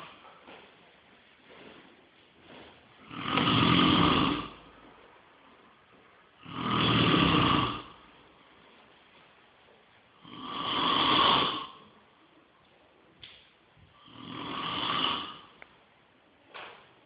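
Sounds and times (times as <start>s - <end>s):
person snoring: 3.0s - 4.7s, 6.4s - 8.1s, 10.2s - 12.0s, 14.0s - 15.6s.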